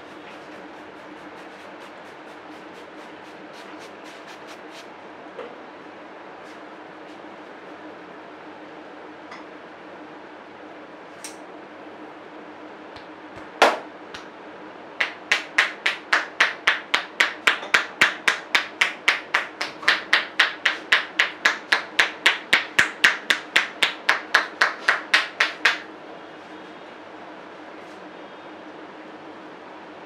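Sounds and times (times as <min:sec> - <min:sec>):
hands slapping on head: 0:15.0 - 0:25.8.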